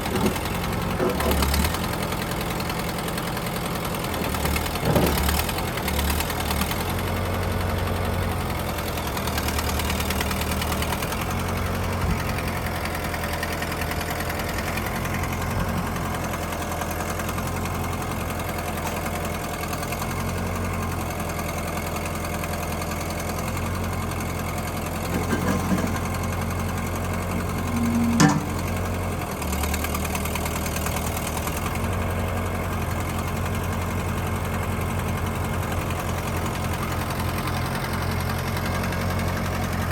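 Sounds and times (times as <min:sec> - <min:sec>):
tractor diesel engine running: 0:00.0 - 0:39.9.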